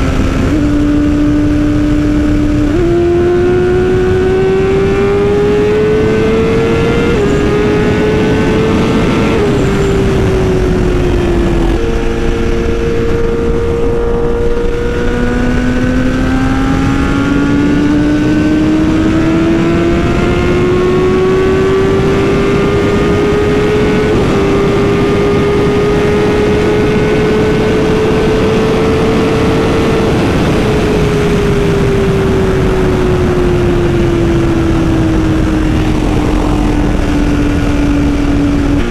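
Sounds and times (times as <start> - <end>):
motorcycle engine under way: 0.0 - 38.9
wind rush: 0.0 - 38.9.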